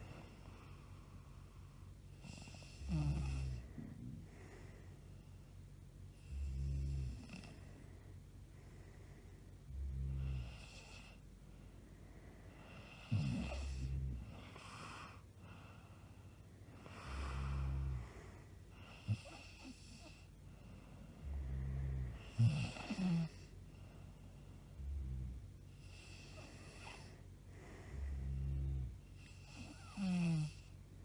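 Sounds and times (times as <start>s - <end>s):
woman snoring: 2.2s - 4.6s, 6.2s - 7.7s, 9.7s - 11.2s, 12.7s - 15.2s, 16.8s - 20.3s, 21.2s - 23.6s, 24.8s - 30.8s
airy breaths: 3.6s - 5.7s, 11.1s - 30.0s.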